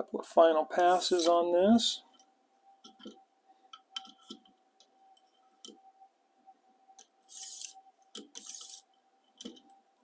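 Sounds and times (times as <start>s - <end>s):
sharpening stone scraping blade: 7.2s - 7.8s, 8.4s - 8.9s.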